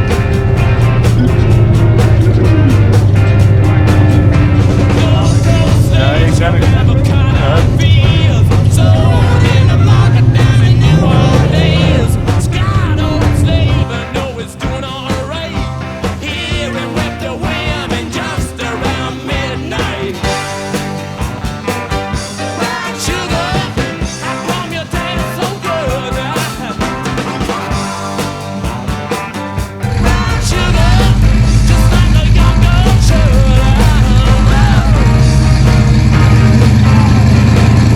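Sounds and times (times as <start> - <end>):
loud low rumble: 0.0 - 14.4, 29.8 - 37.9
rock song with singing: 0.0 - 37.9.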